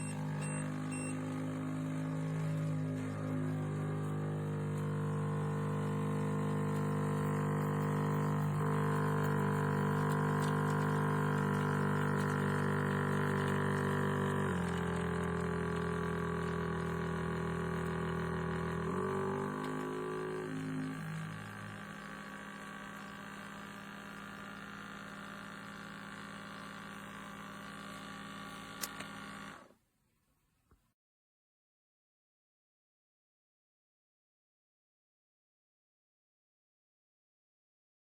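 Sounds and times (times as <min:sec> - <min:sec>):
espresso maker pump droning: 0:00.0 - 0:29.7.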